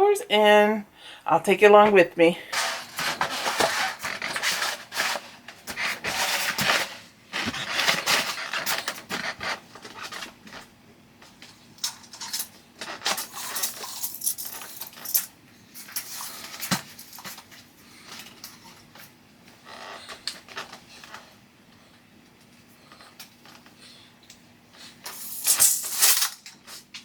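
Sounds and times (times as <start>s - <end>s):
vinyl wallpaper rustling and crinkling: 2.5s - 11.8s.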